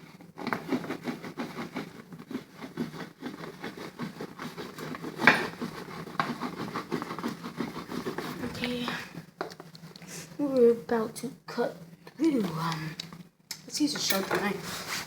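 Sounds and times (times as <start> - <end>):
knife sawing plastic bottle: 0.0 - 10.0.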